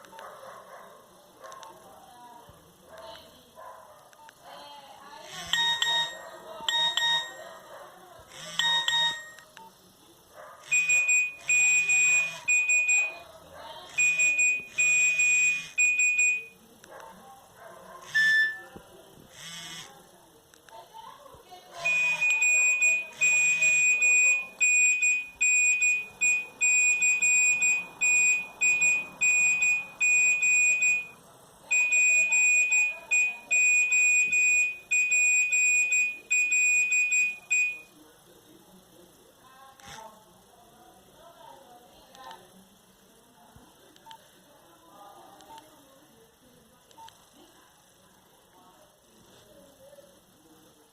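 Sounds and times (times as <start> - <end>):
monophonic phone ringtone beeps: 5.3 - 7.4, 8.3 - 9.5, 10.7 - 13.3, 13.9 - 16.6, 18.1 - 18.8, 21.8 - 37.9.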